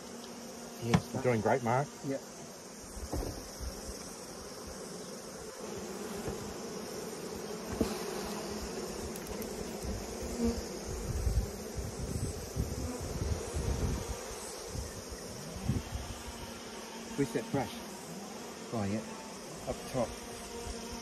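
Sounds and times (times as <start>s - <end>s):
honeybees buzzing: 0.0s - 21.0s
wind rumble on microphone: 10.8s - 16.2s.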